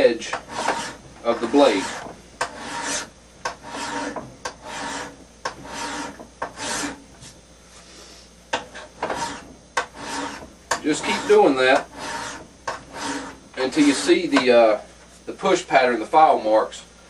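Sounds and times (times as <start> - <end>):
file rasping on axe blade: 0.3 - 7.0, 8.6 - 14.5.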